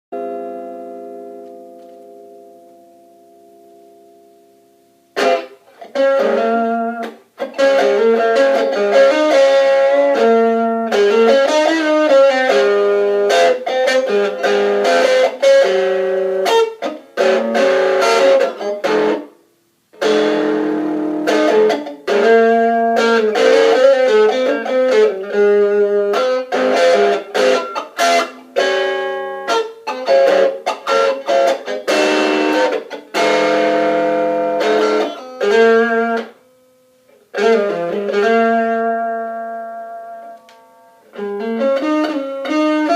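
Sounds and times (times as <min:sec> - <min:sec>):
electric guitar through small amp: 0:00.2 - 0:42.9.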